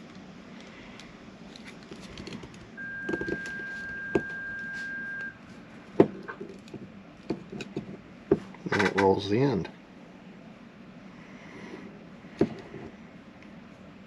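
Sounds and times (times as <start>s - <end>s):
handling noise: 1.5s - 9.1s
steady high tone: 2.8s - 5.7s.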